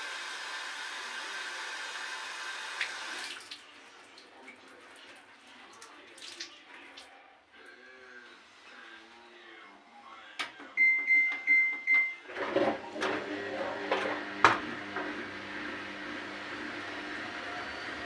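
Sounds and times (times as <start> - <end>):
washing machine beeping: 10.8 - 13.6
washing machine motor humming: 10.8 - 18.0.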